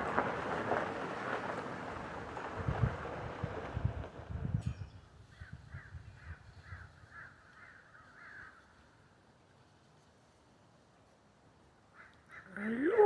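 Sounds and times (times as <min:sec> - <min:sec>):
wind buffeting microphone: 0:00.0 - 0:07.0.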